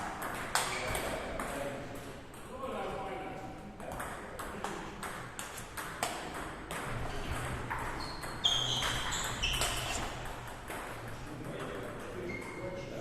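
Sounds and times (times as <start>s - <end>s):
table tennis balls clicking: 0.0s - 1.6s, 3.8s - 12.1s
short high squeaks: 7.9s - 10.2s.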